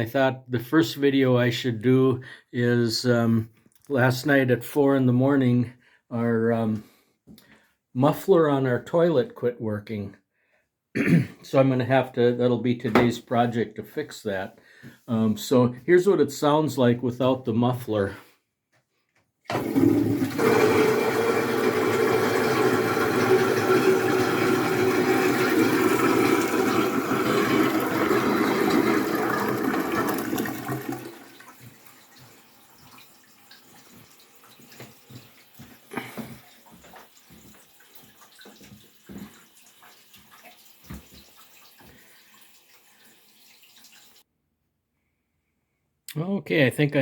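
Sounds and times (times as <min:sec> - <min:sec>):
toilet flushing and refilling: 0:19.5 - 0:44.3
water dripping: 0:23.0 - 0:44.2.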